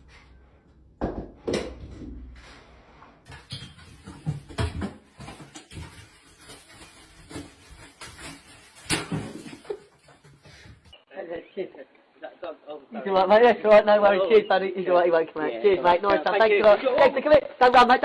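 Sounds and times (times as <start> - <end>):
knocks and thumps: 1.0 - 2.5, 3.2 - 6.2.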